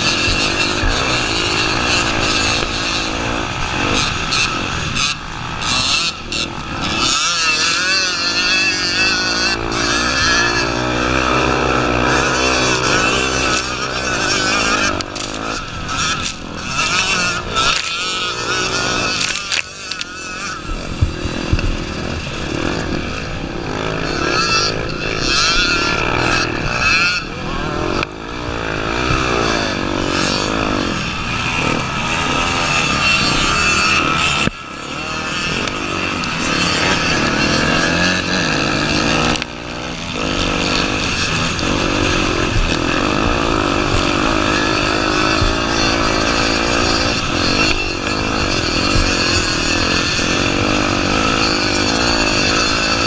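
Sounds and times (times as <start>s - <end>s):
motorcycle engine revving: 0.0s - 53.0s.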